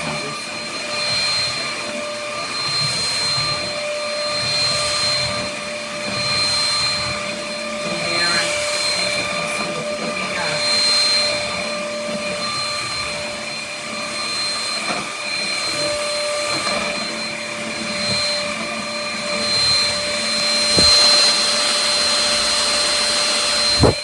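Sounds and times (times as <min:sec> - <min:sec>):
stick vacuum running: 0:00.0 - 0:24.0
vacuum head knocking: 0:20.4 - 0:21.6, 0:23.7 - 0:24.0.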